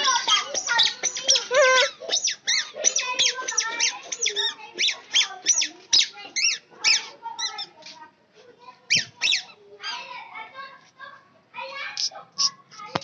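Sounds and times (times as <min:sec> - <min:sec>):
high squeaky animal cries: 0:00.0 - 0:07.7, 0:08.9 - 0:10.0.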